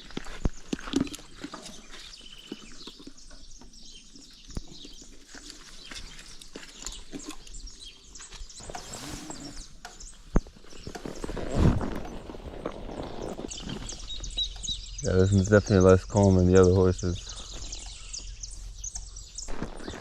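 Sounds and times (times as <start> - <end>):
horse hooves and tack knocking: 0.0 - 15.0
bird chirps: 0.5 - 20.0.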